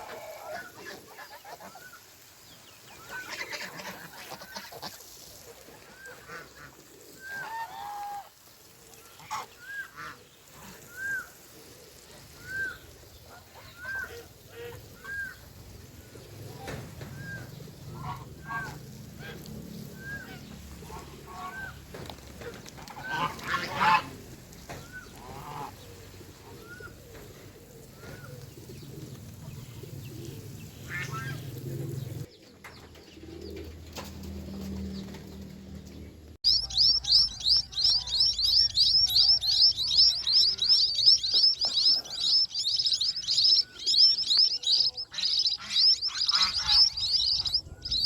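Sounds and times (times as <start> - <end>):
geese honking: 3.0 - 5.2, 5.8 - 11.3, 12.4 - 15.5, 16.2 - 28.6, 30.7 - 32.3, 36.5 - 48.0.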